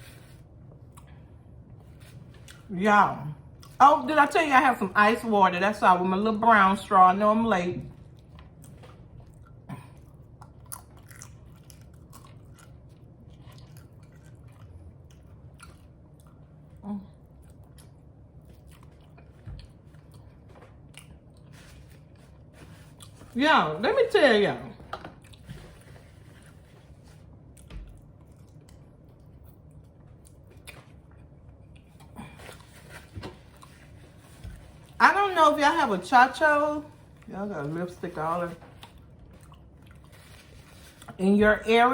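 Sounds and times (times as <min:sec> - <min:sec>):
close chewing with crunches: 0:08.0 - 0:23.4, 0:25.1 - 0:35.0, 0:38.6 - 0:41.2.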